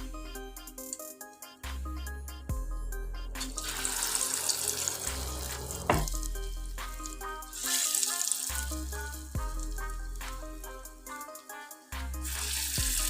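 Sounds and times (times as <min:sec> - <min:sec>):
background music with steady beat: 0:00.0 - 0:13.0
batter sizzling in hot oil: 0:03.6 - 0:10.4, 0:12.2 - 0:13.0.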